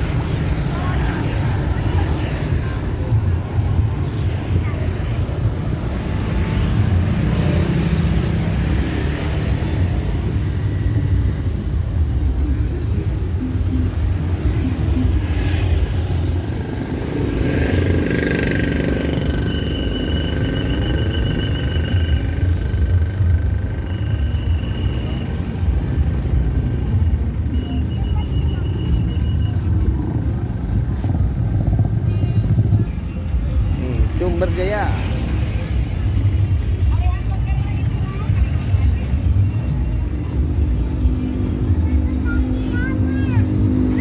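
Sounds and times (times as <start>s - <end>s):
bus diesel engine rumbling: 9.4s - 34.6s, 35.4s - 44.0s.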